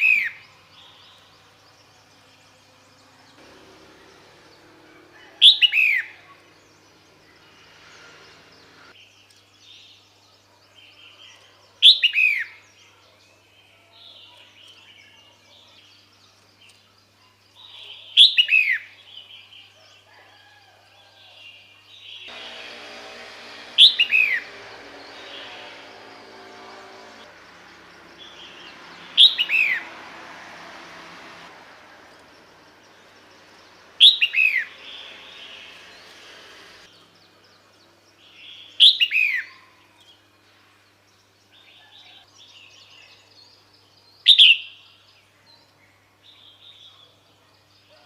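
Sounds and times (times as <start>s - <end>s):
bird downward-slurred calls: 22.3s - 27.3s.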